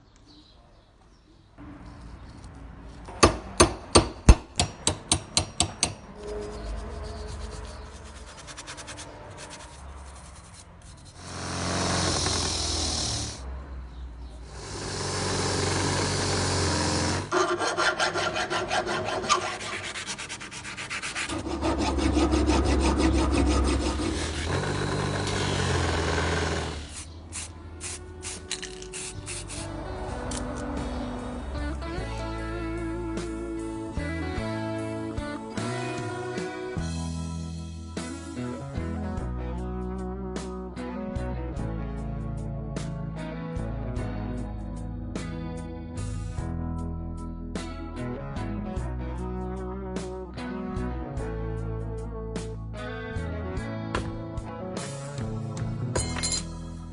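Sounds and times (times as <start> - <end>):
sharp taps on metal: 3.1 - 6.0
abrasive rubbing and filing on metal: 6.2 - 13.4, 17.3 - 25.2.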